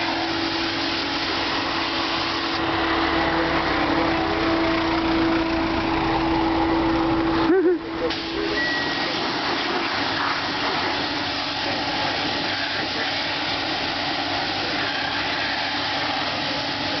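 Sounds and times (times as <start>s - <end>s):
car engine running: 0.0s - 8.6s.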